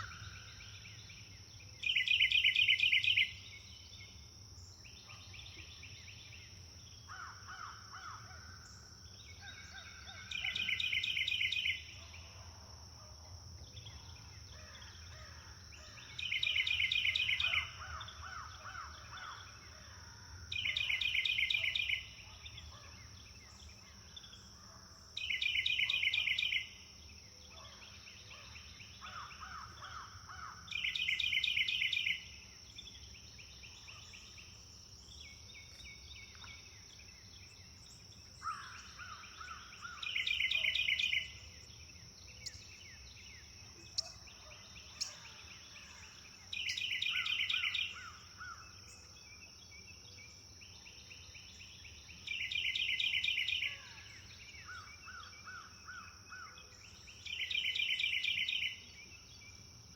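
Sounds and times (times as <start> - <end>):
bird trilling song: 1.8 - 3.6, 30.7 - 32.2, 37.3 - 41.5, 42.3 - 49.1, 50.9 - 56.0, 56.8 - 59.2.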